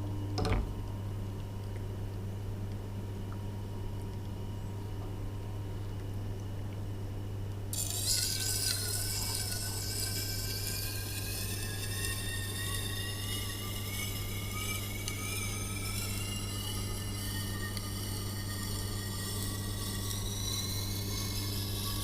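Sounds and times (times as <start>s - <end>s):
knife grinding on wheel: 7.7s - 22.0s
sharpener motor humming: 7.7s - 22.0s.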